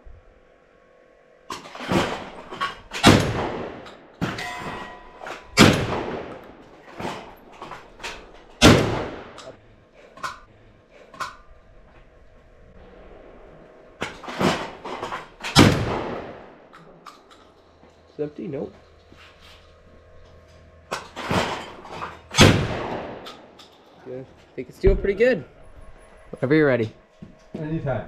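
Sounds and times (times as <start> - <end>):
quieter bangs: 1.5 - 9.6, 12.8 - 17.5, 20.8 - 24.0
shotgun blasts with echo: 3.0 - 4.8, 5.6 - 6.5, 8.6 - 9.4, 15.5 - 16.6, 22.3 - 23.3.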